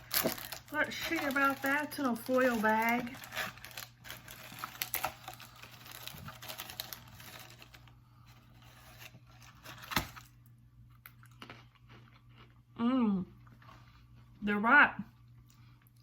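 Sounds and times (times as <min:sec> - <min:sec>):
foil snack bag crinkling: 0:00.0 - 0:10.3.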